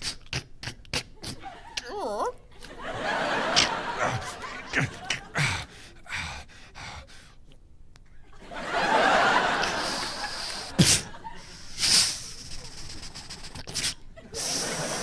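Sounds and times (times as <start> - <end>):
studio audience laughing: 1.4 - 1.9, 2.5 - 5.7, 8.3 - 11.7, 14.2 - 15.0.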